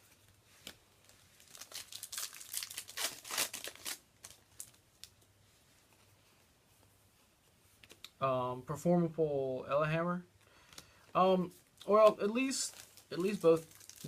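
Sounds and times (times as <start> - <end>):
foil wrapper crinkling and tearing: 1.4 - 5.2, 12.6 - 14.0.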